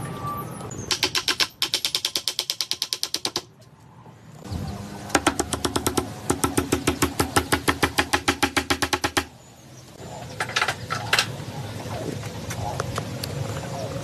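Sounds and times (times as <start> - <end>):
mechanism clicking fast: 0.9 - 3.5.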